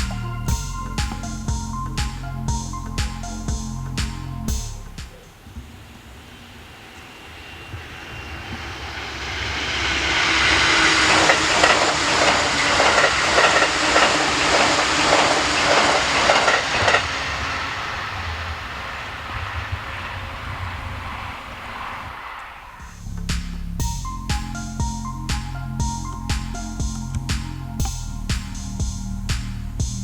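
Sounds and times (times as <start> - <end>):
electric train passing: 0.0 - 23.3, 23.9 - 29.3
train wheels clicking over rail joints: 6.8 - 21.9.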